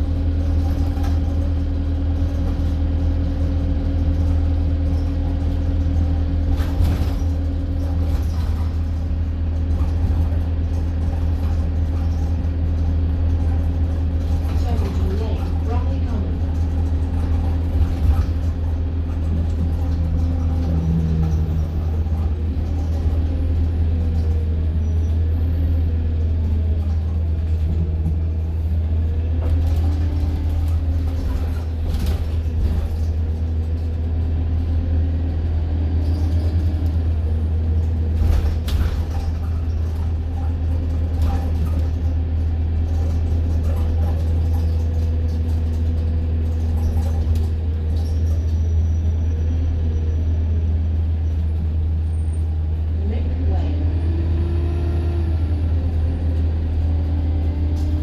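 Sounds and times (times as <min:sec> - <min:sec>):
bus engine and road drone: 0:00.0 - 0:58.0.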